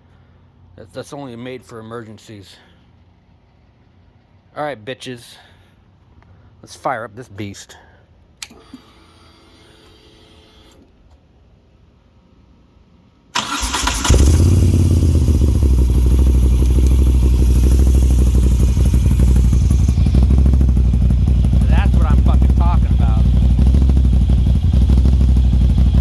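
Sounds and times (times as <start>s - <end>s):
starter cranking: 13.4s - 24.1s
motorcycle engine idling: 13.4s - 26.0s
ignition key click: 16.5s - 18.2s.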